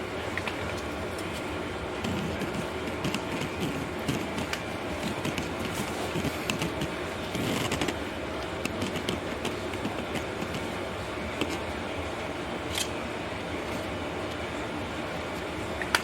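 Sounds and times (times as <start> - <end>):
steady background hum: 0.0 - 16.0
small metal clicks and scrapes: 2.0 - 8.0, 8.6 - 10.7.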